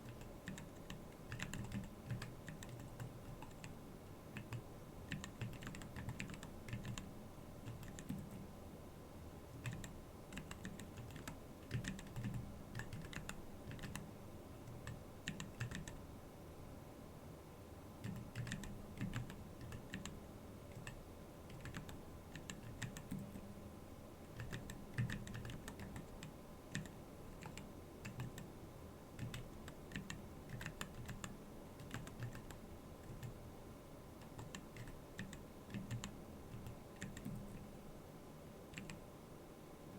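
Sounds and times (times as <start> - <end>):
mechanical keyboard typing: 0.0 - 3.8, 4.4 - 8.4, 9.6 - 14.1, 14.7 - 16.0, 18.0 - 23.4, 24.3 - 28.5, 29.2 - 33.4, 34.2 - 37.6, 38.7 - 39.0.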